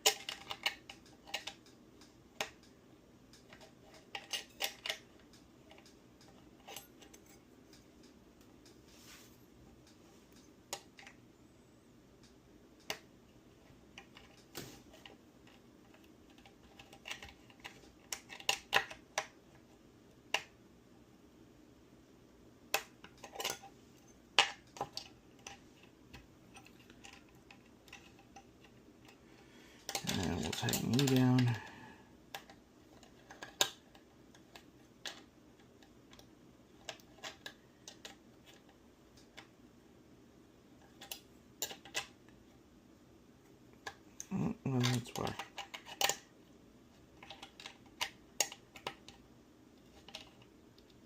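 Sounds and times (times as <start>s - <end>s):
small tools clicking and tapping: 0.0s - 8.9s, 12.2s - 19.7s, 22.7s - 39.5s, 40.8s - 42.3s, 43.8s - 46.3s, 47.2s - 49.2s, 49.8s - 51.0s.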